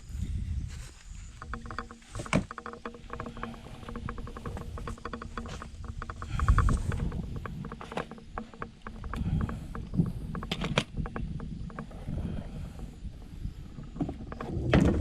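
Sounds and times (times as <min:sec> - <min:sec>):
rumbling background: 0:01.3 - 0:15.0
paddle knocking on hull: 0:01.4 - 0:13.0.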